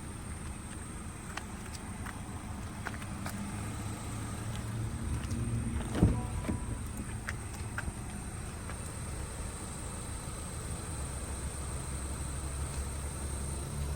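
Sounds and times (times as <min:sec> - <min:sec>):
car engine low rumble: 0:00.0 - 0:13.9
thump: 0:05.8 - 0:07.1.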